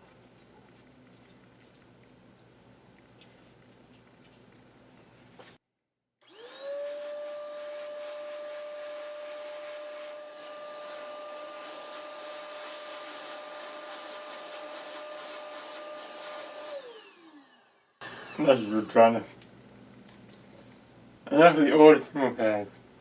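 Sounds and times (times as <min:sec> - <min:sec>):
small electric motor whine: 0:06.2 - 0:19.2
hiss: 0:07.0 - 0:16.8.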